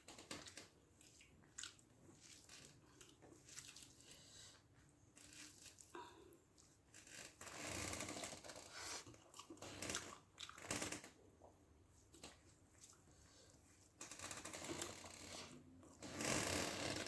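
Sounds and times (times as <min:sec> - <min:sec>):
fingers mixing wet rice: 0:00.0 - 0:07.6, 0:08.2 - 0:16.6
chewing: 0:00.3 - 0:04.2, 0:08.7 - 0:13.4.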